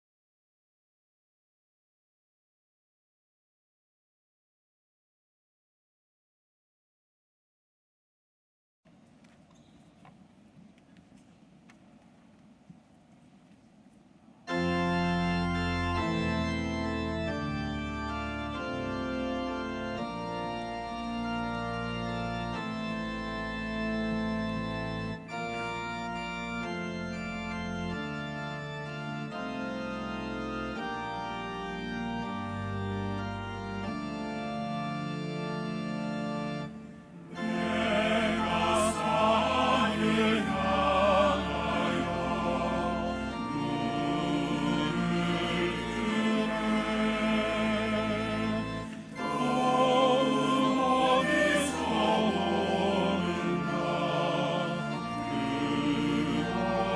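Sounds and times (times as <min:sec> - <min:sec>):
organ playing slow chords: 0:14.4 - 0:56.9
choir singing: 0:37.1 - 0:56.9.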